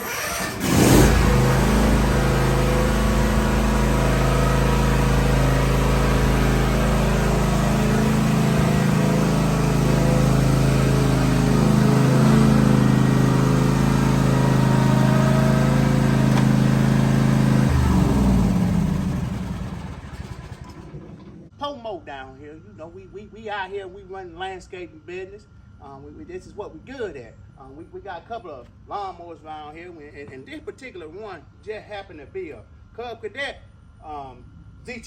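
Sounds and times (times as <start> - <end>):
mower engine running: 0.0 - 21.4.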